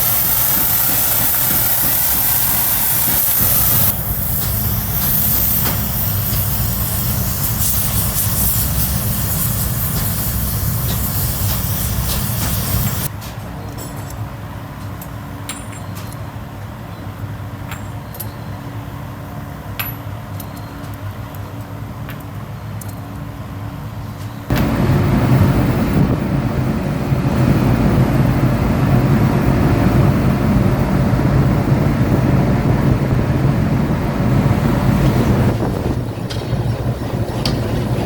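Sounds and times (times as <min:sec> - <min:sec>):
loud steady machine noise: 0:00.0 - 0:13.1, 0:24.5 - 0:38.0
low machine hum: 0:24.5 - 0:38.0.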